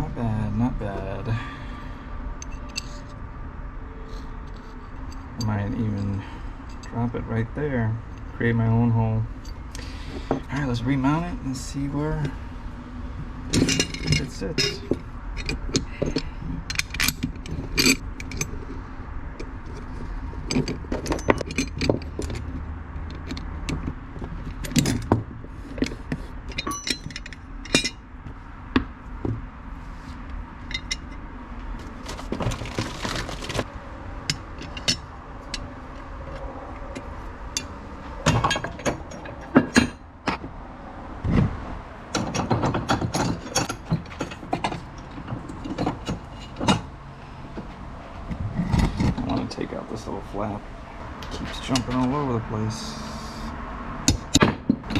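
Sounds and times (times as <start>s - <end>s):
low steady hum: 0.0s - 54.9s
metal hardware clinking and scraping: 2.4s - 3.2s, 4.0s - 7.1s, 9.3s - 12.4s, 13.4s - 28.0s, 30.0s - 36.1s, 36.9s - 40.4s, 42.1s - 46.9s, 47.5s - 50.6s, 51.2s - 53.3s.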